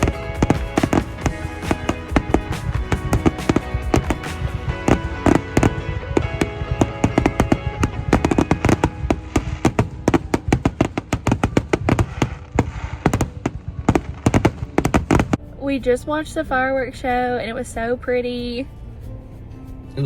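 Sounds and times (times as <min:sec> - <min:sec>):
fireworks bangs: 0:00.0 - 0:15.4
music playing: 0:00.0 - 0:20.0.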